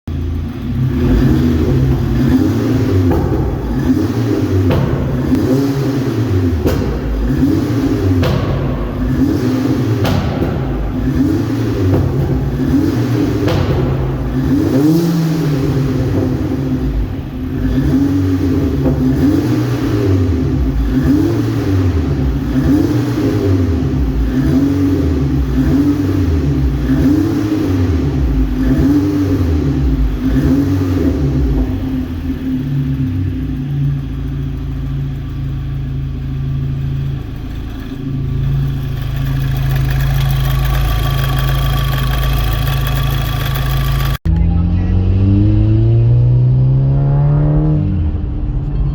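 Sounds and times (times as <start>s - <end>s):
car engine running unevenly: 0.0s - 48.9s.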